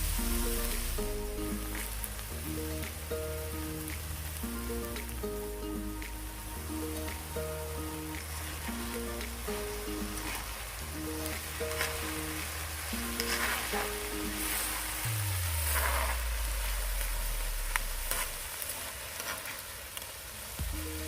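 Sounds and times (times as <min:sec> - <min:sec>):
low falling tone: 0:00.0 - 0:11.2, 0:14.2 - 0:18.5
background music: 0:00.0 - 0:18.5, 0:20.6 - 0:21.0
rice sizzling on a griddle: 0:00.0 - 0:21.0.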